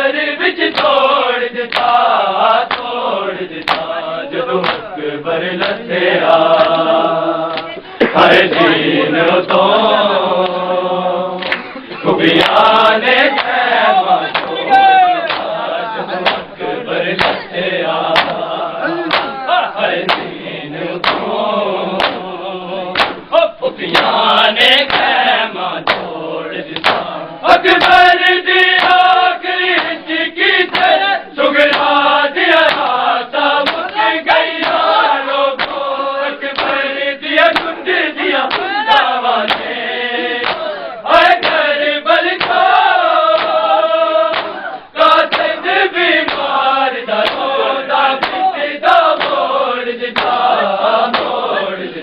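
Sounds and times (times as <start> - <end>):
men chanting in chorus: 0.0 - 52.0
chest-beating slaps: 0.7 - 1.1, 1.7 - 2.0, 2.6 - 4.0, 4.6 - 5.0, 5.6 - 5.8, 6.4 - 9.7, 11.4 - 20.4, 21.0 - 22.3, 22.9 - 24.2, 24.8 - 25.2, 25.8 - 27.2, 27.8 - 28.1, 28.8 - 29.1, 29.7 - 30.0, 30.7 - 31.0, 31.6 - 32.0, 32.6 - 33.0, 33.6 - 35.8, 36.4 - 43.7, 44.3 - 47.6, 48.2 - 48.5, 49.1 - 49.6, 50.2 - 51.4.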